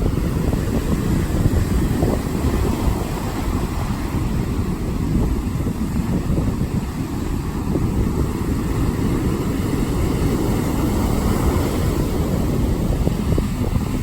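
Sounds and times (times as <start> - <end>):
heavy surf washing: 0.0 - 14.0
strong wind buffeting microphone: 0.0 - 14.0.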